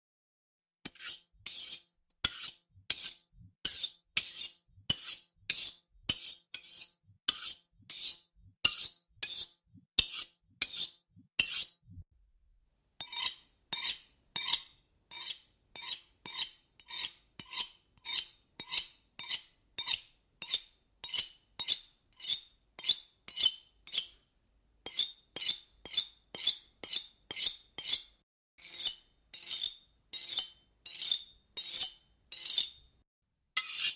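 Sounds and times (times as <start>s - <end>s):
knife blade scraping on sharpener: 0.9s - 12.0s, 13.0s - 24.2s, 24.9s - 32.8s, 33.6s - 33.9s.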